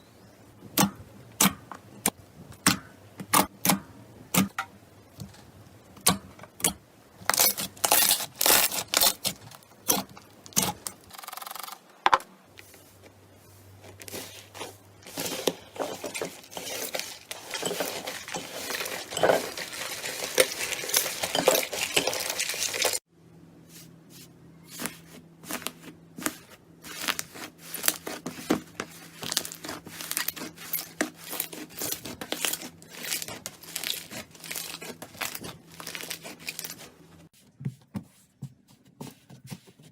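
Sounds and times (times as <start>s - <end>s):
slime crackling: 16.5s - 23.0s, 25.5s - 36.8s.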